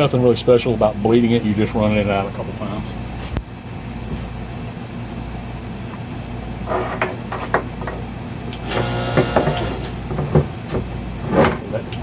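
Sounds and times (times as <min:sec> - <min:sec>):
hydraulic pump motor running: 0:08.5 - 0:10.2.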